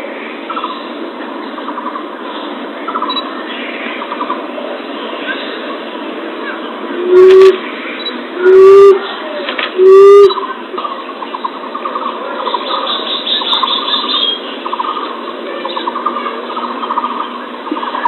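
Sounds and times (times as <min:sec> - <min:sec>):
dove low hoot: 0:07.0 - 0:07.6, 0:08.4 - 0:09.2, 0:09.8 - 0:10.5
rapid trilling bird notes: 0:07.0 - 0:09.1, 0:09.8 - 0:10.5.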